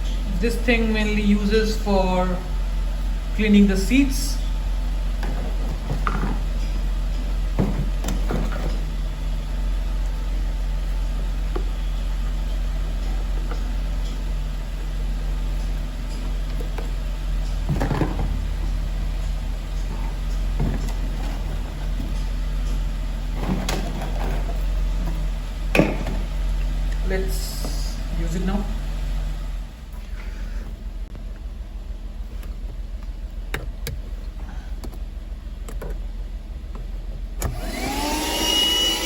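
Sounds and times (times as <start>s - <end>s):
car engine idling: 0.0s - 38.1s
plastic parts knocking and rustling: 5.2s - 8.9s, 16.2s - 18.7s, 19.8s - 25.2s.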